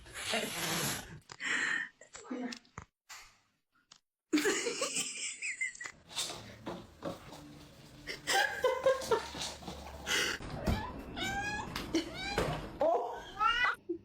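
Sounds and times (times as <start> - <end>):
person laughing: 8.1 - 9.4.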